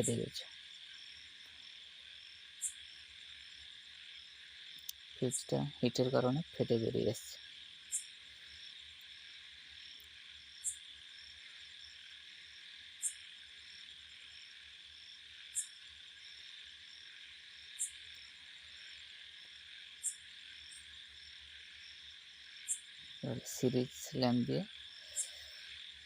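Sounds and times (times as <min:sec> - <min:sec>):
crickets chirping: 0:00.0 - 0:26.0.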